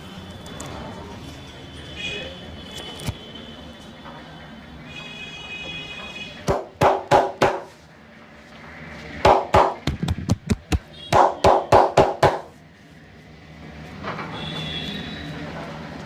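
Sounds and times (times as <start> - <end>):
hands slapping on head and body: 9.3 - 12.5.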